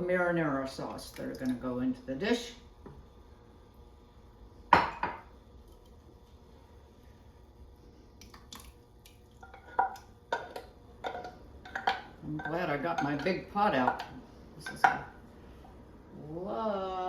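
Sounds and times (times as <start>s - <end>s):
utensil clanking on pot: 9.4s - 15.1s.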